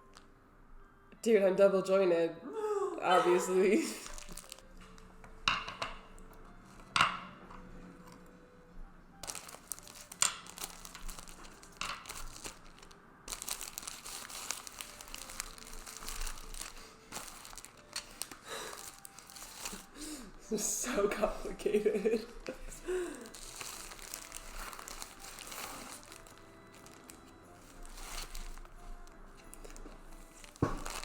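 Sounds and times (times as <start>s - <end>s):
plastic packaging crinkling: 3.3s - 5.1s, 9.2s - 20.4s, 21.4s - 31.0s.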